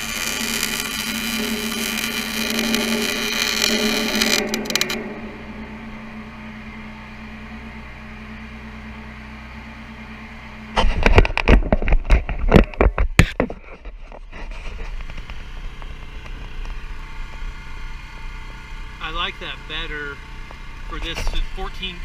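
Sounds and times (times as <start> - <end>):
loud irregular cracks and knocks: 0.0 - 5.0
portable generator humming: 0.0 - 13.4.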